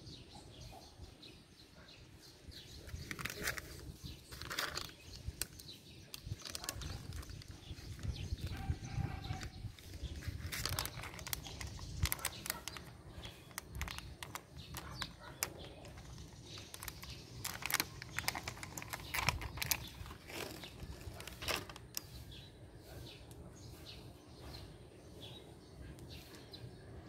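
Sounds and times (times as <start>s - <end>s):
pet eating clicks and crackles: 2.9s - 22.1s.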